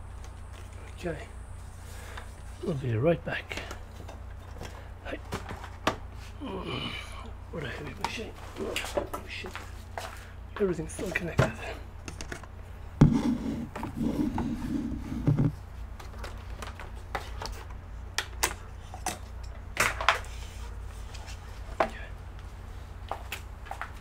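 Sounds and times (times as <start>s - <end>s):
steady low hum: 0.0s - 24.0s
low bumps and knocks: 13.0s - 15.6s
clicks and taps of parts: 15.3s - 20.3s.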